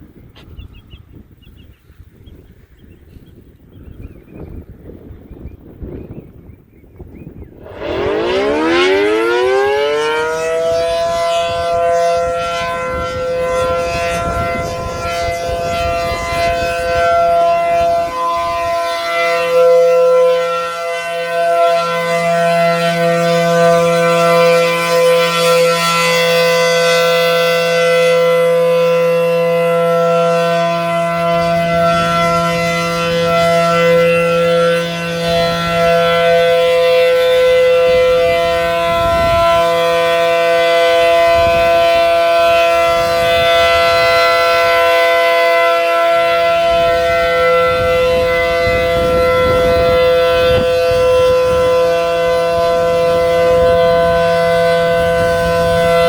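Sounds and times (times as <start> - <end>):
warning siren steady tone: 7.2 - 56.0
low rumbles: 7.4 - 9.6.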